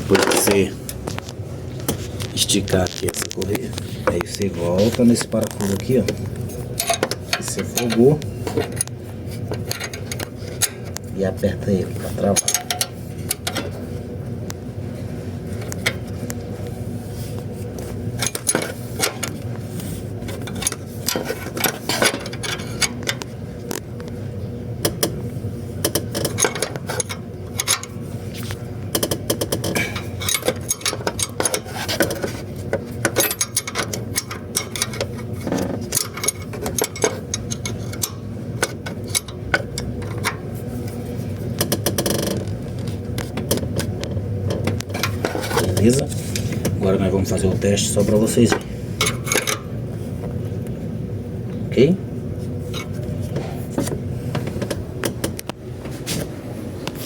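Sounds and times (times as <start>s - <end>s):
steady low hum: 0.0s - 57.0s
wrench clicking and clinking on bolt: 29.0s - 31.6s.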